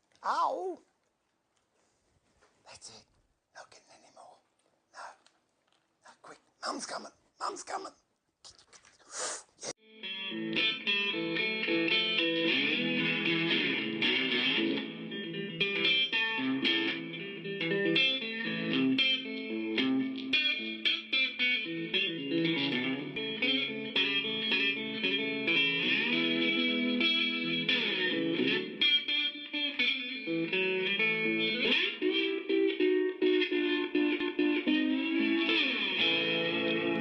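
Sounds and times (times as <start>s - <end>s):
guitar plucked melody: 9.8s - 37.0s.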